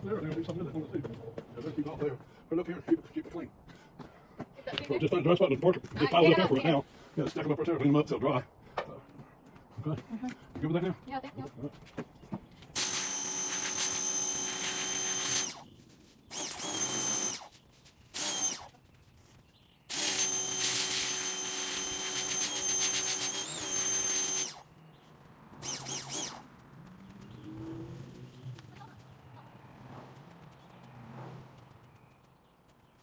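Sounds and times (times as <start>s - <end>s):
pressure washer water jet hissing: 12.8s - 15.6s, 18.2s - 18.7s, 19.9s - 24.6s, 25.6s - 26.4s
motor whine: 12.8s - 15.7s, 16.3s - 17.5s, 18.2s - 18.8s, 19.9s - 24.7s, 25.6s - 26.5s.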